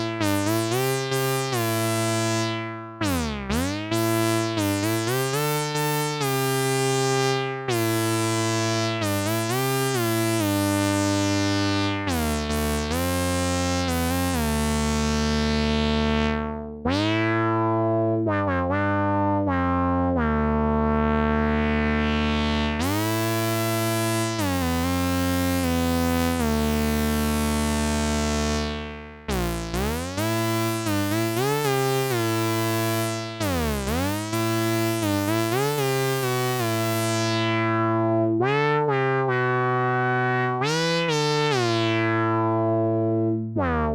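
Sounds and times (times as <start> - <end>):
buzzy synthesizer notes: 0.0 - 43.9.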